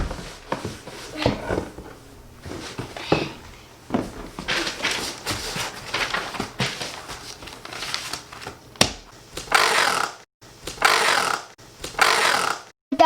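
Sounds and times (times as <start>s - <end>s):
cardboard flaps rustling: 0.0s - 9.5s.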